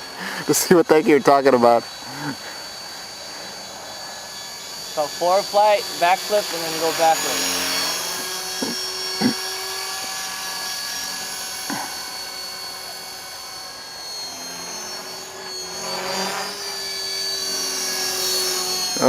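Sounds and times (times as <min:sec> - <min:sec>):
model helicopter whining: 0:00.0 - 0:19.0.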